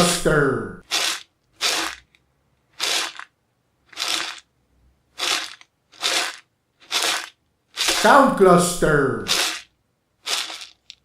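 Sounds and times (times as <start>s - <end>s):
grain being shaken: 0.8s - 3.3s, 3.9s - 4.5s, 5.2s - 8.3s, 9.2s - 11.0s.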